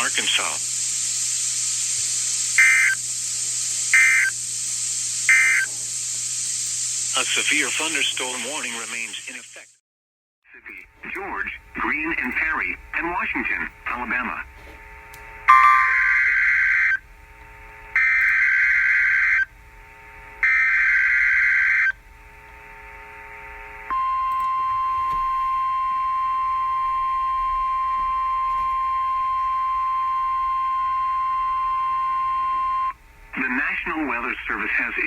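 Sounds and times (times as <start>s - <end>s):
steady alarm tone: 0.0s - 9.7s, 15.4s - 17.1s, 18.0s - 19.5s, 20.4s - 22.0s, 23.9s - 35.0s
digital data bursts: 0.0s - 9.8s, 15.5s - 17.0s.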